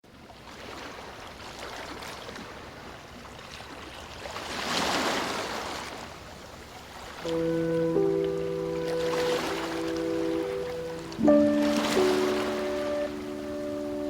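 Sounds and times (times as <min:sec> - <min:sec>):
running water rushing: 0:06.5 - 0:14.0.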